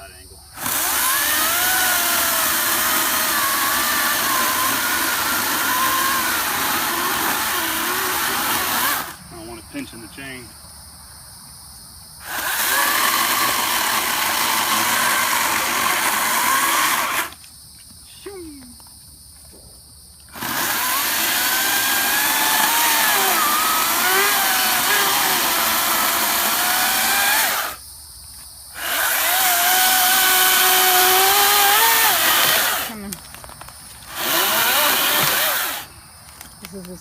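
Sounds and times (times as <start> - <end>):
electric chainsaw cutting log: 0.6 - 9.2, 12.2 - 17.4, 20.3 - 27.8, 28.8 - 33.2, 34.0 - 35.9.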